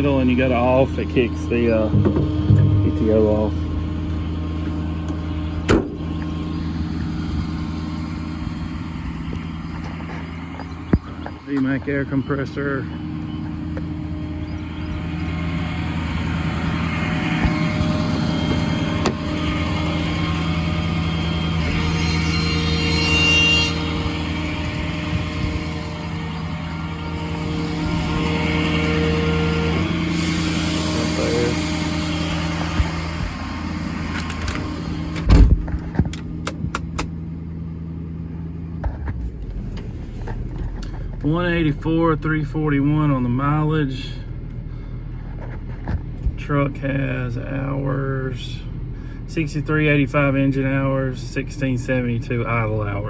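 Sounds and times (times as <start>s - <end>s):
diesel engine running: 0.0s - 53.0s
heavy thump: 1.9s - 3.3s, 35.2s - 36.2s
sharp clicks: 36.1s - 37.2s.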